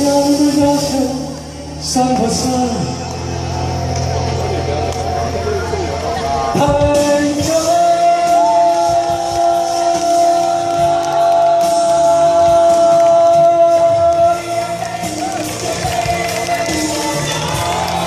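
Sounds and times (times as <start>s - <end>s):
man singing a long high note: 6.4s - 18.0s.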